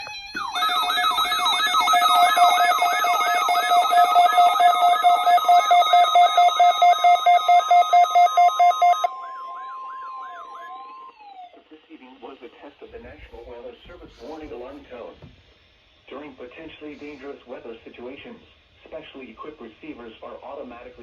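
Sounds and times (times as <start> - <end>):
rapid beeping: 0.0 - 10.8
siren-like rising and falling sweeps: 0.0 - 11.6
steady warning alarm tone: 0.0 - 11.6.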